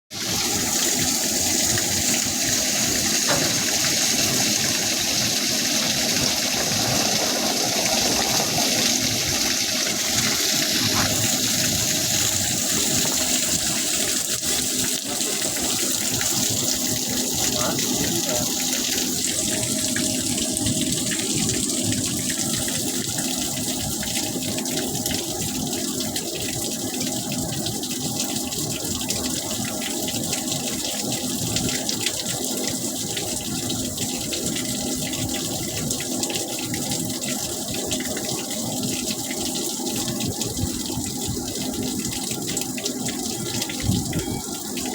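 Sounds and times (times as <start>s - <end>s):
running water hissing: 6.5s - 13.8s.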